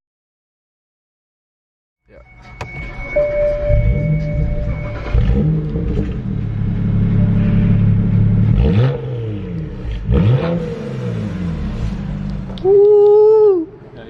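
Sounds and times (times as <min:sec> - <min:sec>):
car engine revving: 0:03.6 - 0:12.6.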